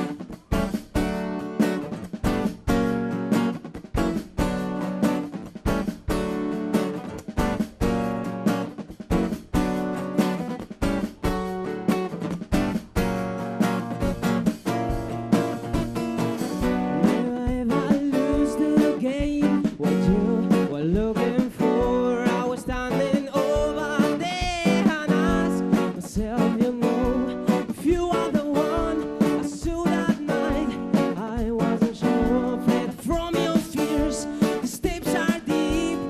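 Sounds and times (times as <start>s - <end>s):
strummed guitar chords: 0.0s - 36.0s
person singing: 16.8s - 36.0s.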